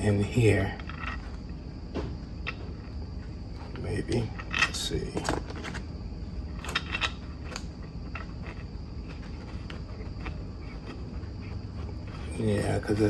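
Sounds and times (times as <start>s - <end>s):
steady background hum: 0.0s - 13.0s.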